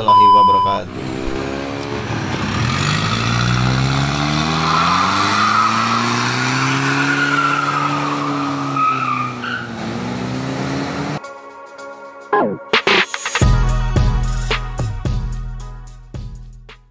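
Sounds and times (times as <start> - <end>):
diesel engine revving: 0.1 - 11.2.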